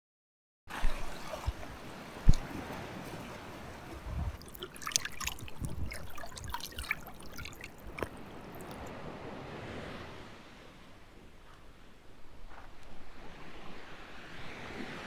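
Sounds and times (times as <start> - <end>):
water fizzing through sand: 0.7 - 9.0
surf washing up the beach: 0.7 - 12.3, 12.9 - 15.0.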